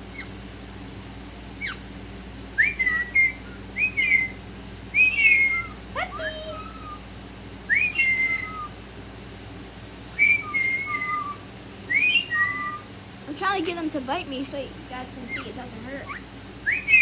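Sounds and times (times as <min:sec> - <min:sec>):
parrot whistling: 0:00.0 - 0:00.3, 0:01.6 - 0:01.8, 0:02.6 - 0:07.0, 0:07.7 - 0:08.8, 0:10.1 - 0:12.9, 0:15.2 - 0:17.0.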